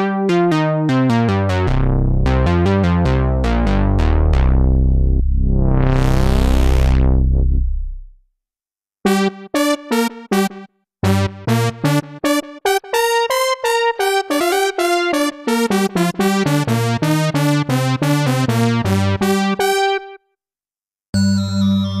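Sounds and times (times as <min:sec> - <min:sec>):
synthesizer low note filter sweep: 0:01.1 - 0:08.2
staccato synthesizer sequence: 0:09.1 - 0:20.2.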